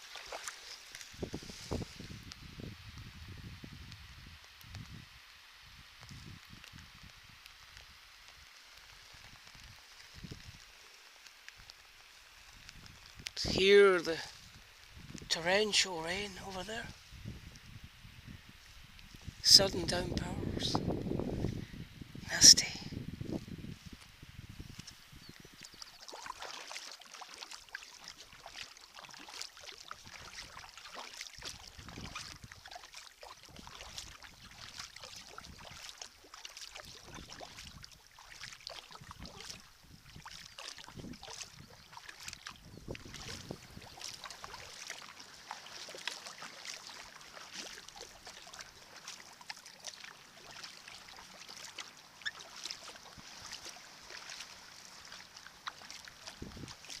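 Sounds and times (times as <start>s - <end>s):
paddle splashing water: 0.0s - 2.2s, 24.6s - 57.0s.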